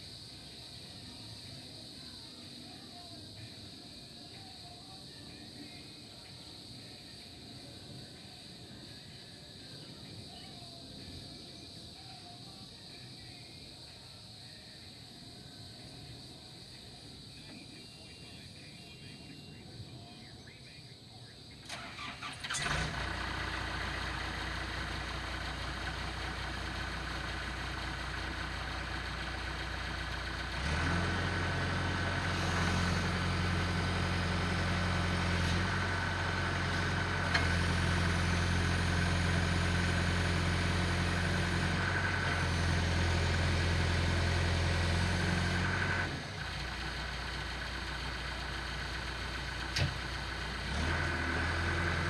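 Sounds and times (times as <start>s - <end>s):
backhoe engine cranking: 21.6s - 52.0s
backhoe engine idling: 21.6s - 52.0s.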